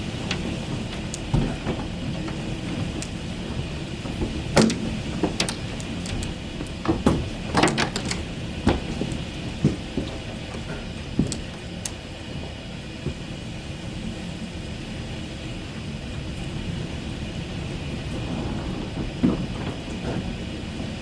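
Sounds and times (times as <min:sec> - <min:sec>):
heavy rain falling: 0:00.0 - 0:11.8, 0:16.2 - 0:21.0.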